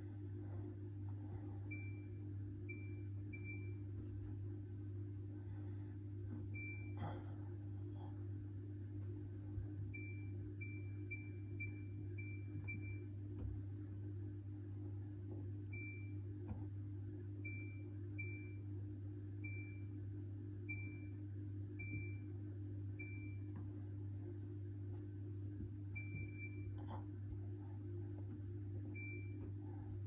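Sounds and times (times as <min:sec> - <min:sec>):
steady low hum: 0:00.0 - 0:30.0.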